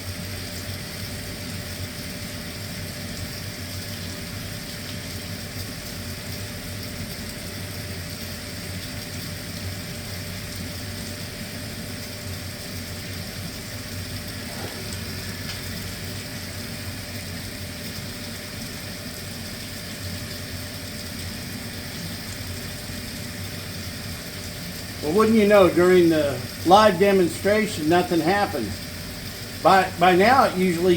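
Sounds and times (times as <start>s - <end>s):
water heater humming: 0.0s - 30.9s
water flowing: 0.3s - 30.9s.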